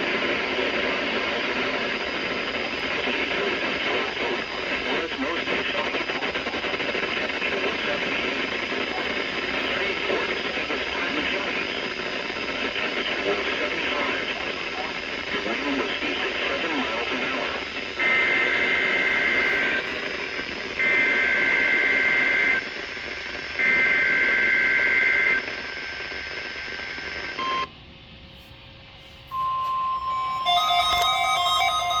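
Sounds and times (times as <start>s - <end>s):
radio hiss: 0.0s - 32.0s
short beep: 29.3s - 32.0s
steady alert tone: 29.4s - 32.0s.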